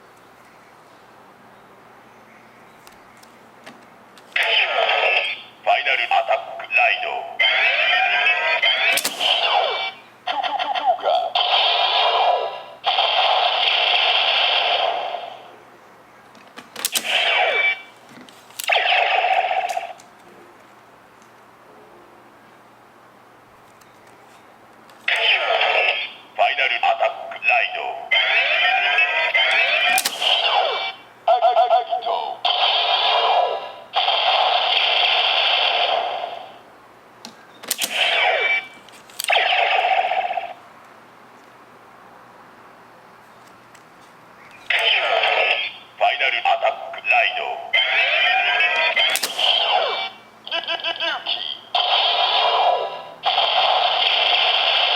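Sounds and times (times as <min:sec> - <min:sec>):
toy electronic sound effects: 0:04.4 - 0:15.5, 0:16.9 - 0:17.9, 0:18.6 - 0:20.0, 0:25.1 - 0:36.6, 0:37.7 - 0:40.6, 0:44.7 - 0:54.9
sharp plastic clicks: 0:08.9 - 0:09.5, 0:16.3 - 0:17.4, 0:29.8 - 0:30.5, 0:37.2 - 0:38.2, 0:38.8 - 0:39.4, 0:49.0 - 0:49.7.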